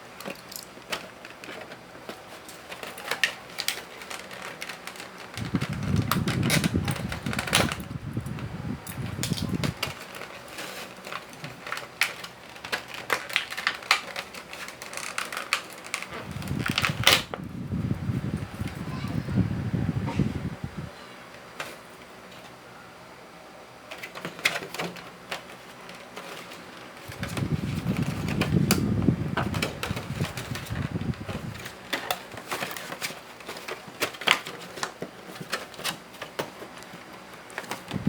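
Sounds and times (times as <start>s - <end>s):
box packaging clicks and rustles: 0.0s - 17.4s, 21.3s - 22.6s, 23.7s - 38.0s
low rubbing and handling noise: 14.5s - 22.6s, 25.5s - 34.0s.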